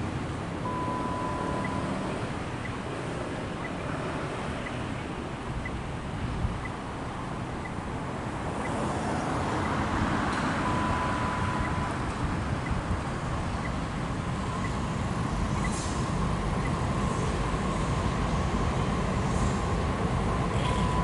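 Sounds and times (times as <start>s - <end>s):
street traffic: 0.0s - 21.0s
short steady beep: 0.6s - 2.0s, 10.6s - 11.9s
wind rumbling on microphone: 5.2s - 21.0s.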